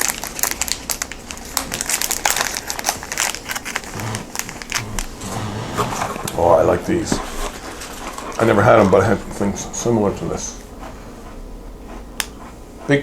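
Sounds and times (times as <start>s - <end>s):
plastic wrapper crinkling: 0.0s - 5.2s.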